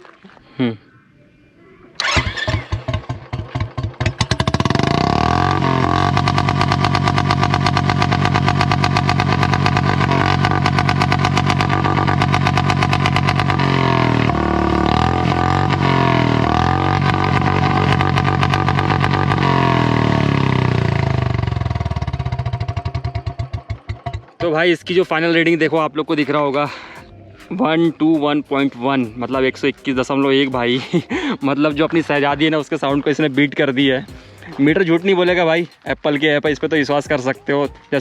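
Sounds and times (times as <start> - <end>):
motorcycle engine revving: 2.0 - 27.0
thumping engine idle: 2.7 - 5.0, 5.9 - 13.6.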